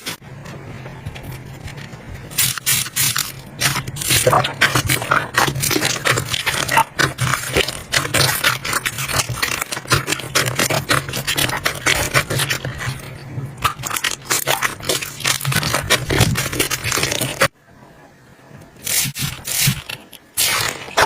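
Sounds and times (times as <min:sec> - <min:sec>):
slime squishing with wet crackles: 0:02.4 - 0:17.6.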